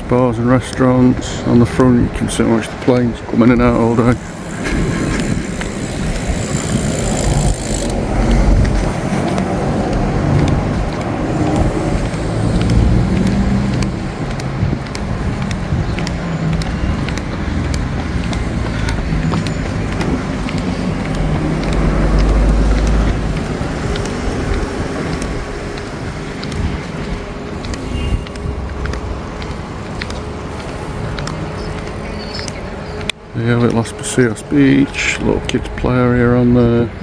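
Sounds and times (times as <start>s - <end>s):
cars passing: 0.0s - 37.0s.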